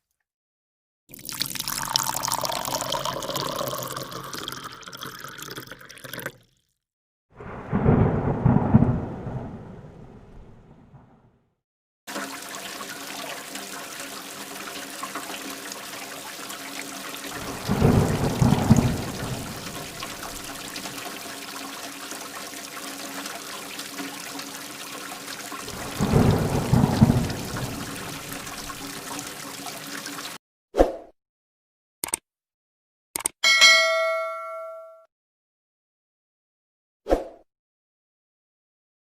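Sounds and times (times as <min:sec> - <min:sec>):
steady rain: 0:07.4 - 0:11.1, 0:12.1 - 0:30.4
thunder rumbling: 0:07.4 - 0:11.4, 0:17.3 - 0:21.0, 0:25.6 - 0:29.4.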